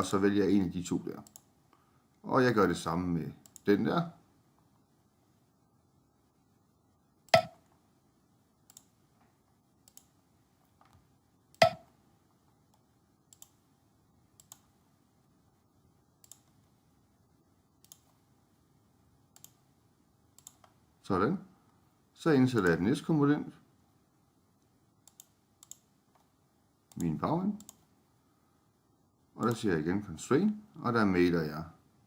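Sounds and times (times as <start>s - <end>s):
computer mouse clicking: 1.2s - 1.5s, 3.4s - 3.7s, 8.7s - 9.0s, 9.8s - 10.2s, 10.8s - 11.9s, 12.7s - 13.6s, 14.4s - 14.7s, 16.2s - 16.7s, 17.8s - 18.2s, 19.3s - 19.6s, 20.4s - 20.8s, 24.6s - 26.3s, 26.9s - 27.9s, 29.4s - 29.7s.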